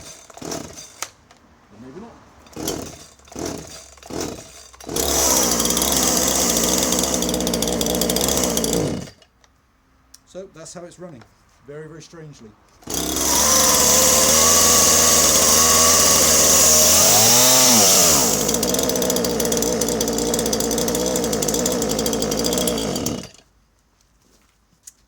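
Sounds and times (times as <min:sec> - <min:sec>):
chainsaw engine running: 0:00.0 - 0:01.0, 0:01.8 - 0:09.2, 0:12.8 - 0:23.4.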